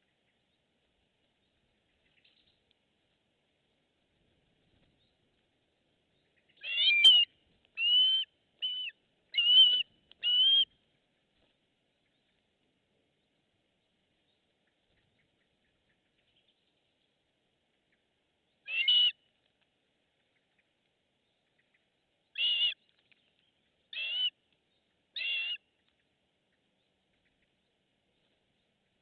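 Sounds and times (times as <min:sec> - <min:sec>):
bird high-pitched calls: 0:06.2 - 0:10.8, 0:18.6 - 0:19.2, 0:21.4 - 0:22.9, 0:23.9 - 0:26.0.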